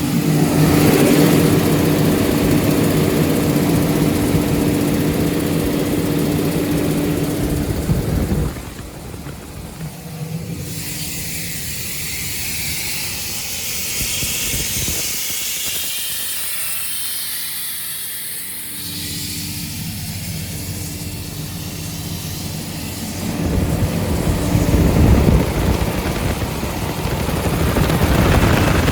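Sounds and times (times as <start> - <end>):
diesel engine rumble: 0.0 - 28.9
compressed air hissing: 10.5 - 25.0.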